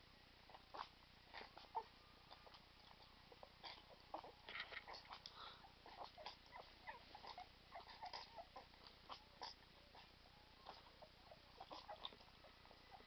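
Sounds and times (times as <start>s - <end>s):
puppies eating wet food: 0.7s - 13.0s
puppy squeaks: 5.8s - 12.2s.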